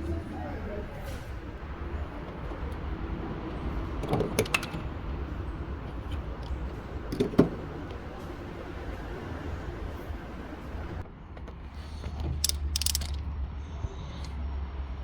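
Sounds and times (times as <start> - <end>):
metal tool clicks: 12.4 - 13.2.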